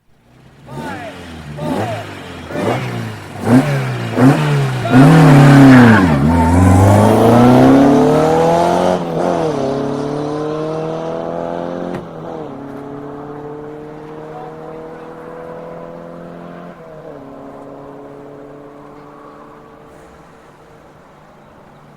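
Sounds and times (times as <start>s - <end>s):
rally car engine revving: 0.2s - 21.2s
car accelerating hard: 0.2s - 21.8s.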